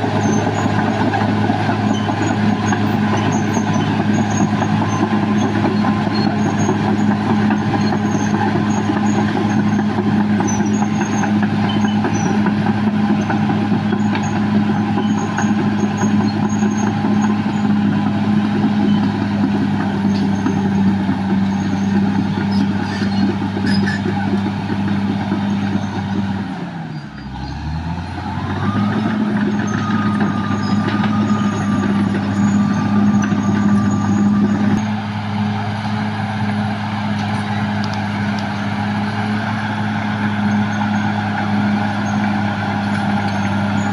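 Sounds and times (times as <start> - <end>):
bulldozer diesel engine running: 0.0 - 43.9.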